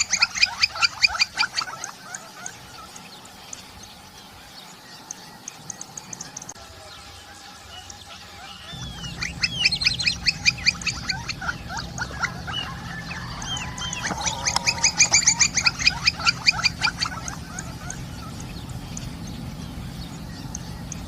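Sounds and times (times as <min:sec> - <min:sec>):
woodpecker fast repeated sharp calls: 0:00.0 - 0:21.0
single rising bird calls: 0:06.4 - 0:21.0.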